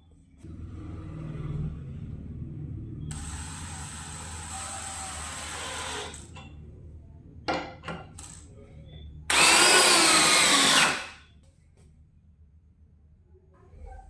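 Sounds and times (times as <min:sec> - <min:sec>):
cordless drill running: 0:03.1 - 0:06.3, 0:09.3 - 0:11.2.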